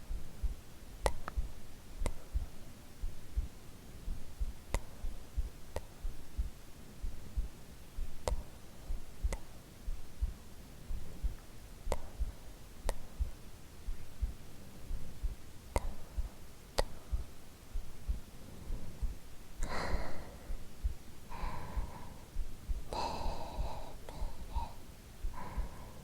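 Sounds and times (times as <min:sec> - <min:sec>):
heartbeat: 0:00.0 - 0:26.0
sharp clicks in pairs: 0:11.9 - 0:12.2, 0:15.7 - 0:16.2.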